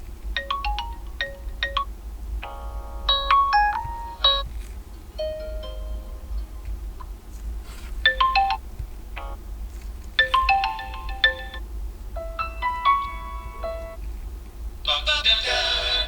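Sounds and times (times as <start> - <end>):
phone ringtone melody: 0.4 - 4.4, 5.2 - 6.6, 8.1 - 8.6, 10.2 - 11.6, 12.3 - 14.0.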